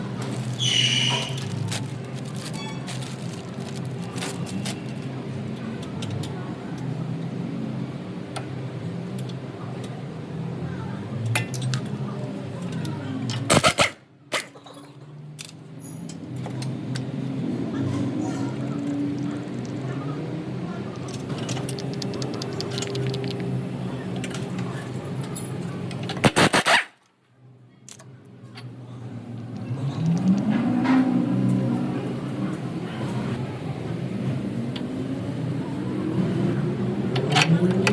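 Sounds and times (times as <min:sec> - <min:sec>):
car engine droning: 0:16.3 - 0:26.1, 0:28.4 - 0:37.9
car engine running: 0:17.0 - 0:24.8
suspension clicks and knocks: 0:20.9 - 0:23.6.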